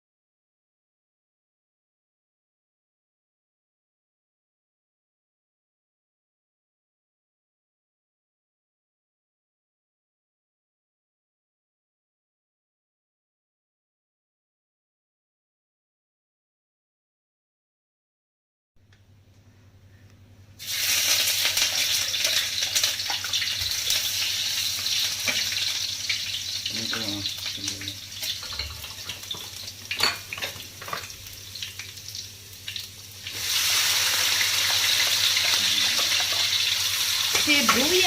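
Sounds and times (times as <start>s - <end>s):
food sizzling in hot oil: 20.6s - 38.0s.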